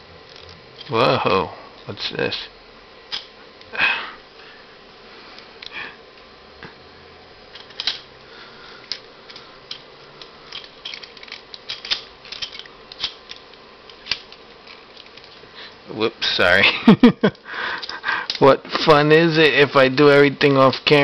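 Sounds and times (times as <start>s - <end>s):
plastic toy parts clicking: 7.5s - 8.0s, 10.5s - 15.4s.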